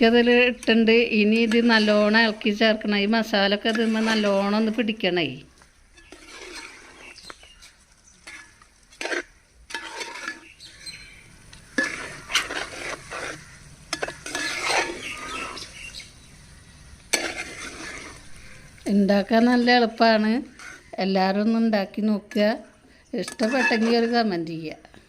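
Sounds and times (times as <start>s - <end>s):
spoon scraping and knocking pan: 0.0s - 4.9s, 5.5s - 16.1s, 16.7s - 21.0s, 22.3s - 24.5s
spoon stirring food in a pan: 0.0s - 21.6s, 22.2s - 24.5s.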